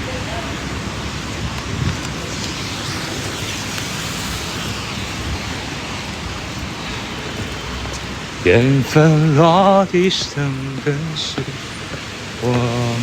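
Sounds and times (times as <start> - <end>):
rain falling: 0.0 - 13.0
wind rumbling on microphone: 0.0 - 13.0.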